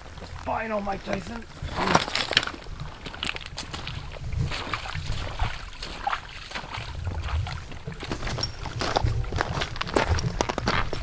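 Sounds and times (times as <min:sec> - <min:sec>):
clothing and gear rustling: 0:00.0 - 0:11.0
crunching footsteps: 0:00.0 - 0:11.0
low rumble on microphone: 0:02.7 - 0:11.0.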